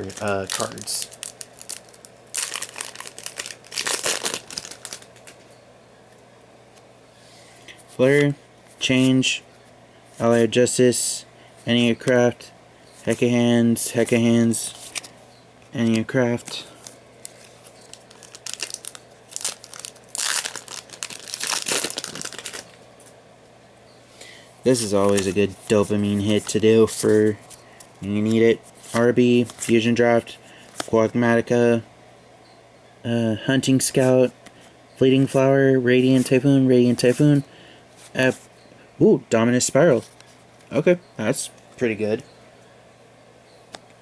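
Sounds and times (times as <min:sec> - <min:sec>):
foil wrapper crinkling: 0:00.0 - 0:05.4, 0:15.9 - 0:22.8, 0:24.7 - 0:29.8.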